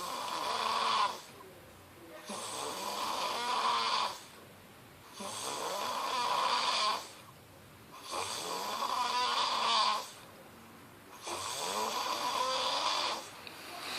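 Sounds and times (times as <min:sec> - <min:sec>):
man snoring: 0:00.0 - 0:01.3, 0:02.3 - 0:04.4, 0:05.1 - 0:07.2, 0:08.0 - 0:10.2, 0:11.2 - 0:13.4.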